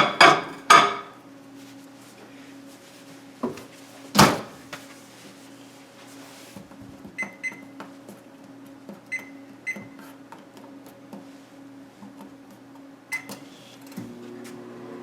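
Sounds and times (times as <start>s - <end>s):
microwave keypad beeps: 7.2s - 7.7s, 9.1s - 10.0s, 13.1s - 13.4s.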